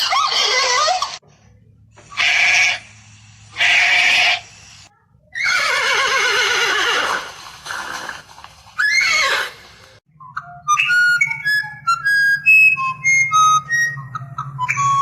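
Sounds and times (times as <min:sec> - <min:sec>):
horse whinnying: 0:05.4 - 0:09.6.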